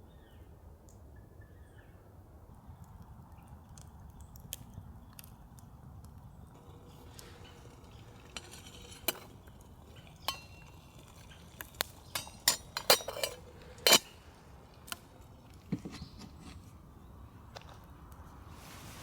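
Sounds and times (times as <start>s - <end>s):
metal cookware clinking: 6.6s - 14.3s.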